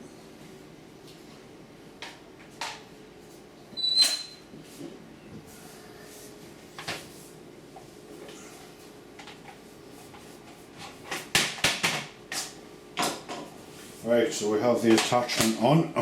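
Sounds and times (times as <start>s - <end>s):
short high squeak: 3.8s - 4.5s.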